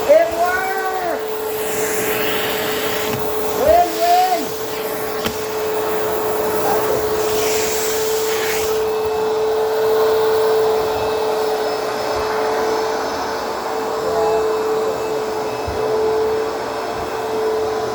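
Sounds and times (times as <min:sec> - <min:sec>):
vacuum cleaner motor whine: 0:00.0 - 0:17.9
air hissing at nozzle: 0:01.2 - 0:09.2.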